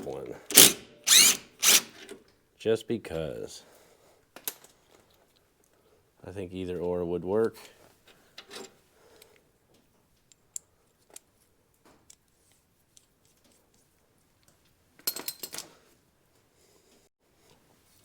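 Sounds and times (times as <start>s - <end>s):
metal tools clinking: 0.5s - 2.1s.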